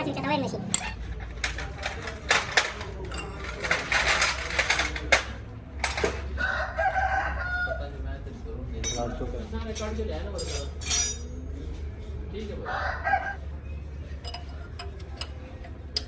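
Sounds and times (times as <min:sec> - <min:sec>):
metallic clinks and knocks: 0:00.7 - 0:06.4, 0:08.8 - 0:11.4
rooster crowing: 0:06.4 - 0:08.0, 0:12.6 - 0:13.5.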